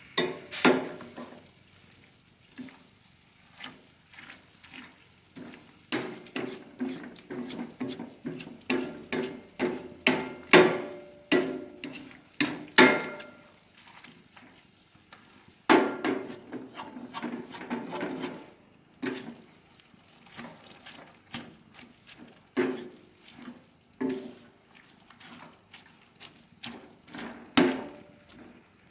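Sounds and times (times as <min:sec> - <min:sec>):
spatula scraping a wok: 0:00.1 - 0:01.5, 0:02.5 - 0:28.6.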